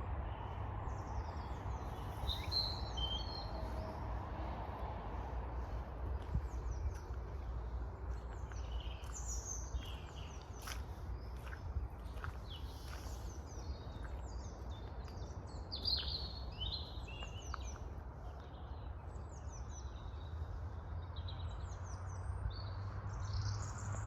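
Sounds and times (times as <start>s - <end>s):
steady low rumble: 0.0s - 15.7s
small birds chirping: 0.3s - 4.2s, 5.2s - 24.0s.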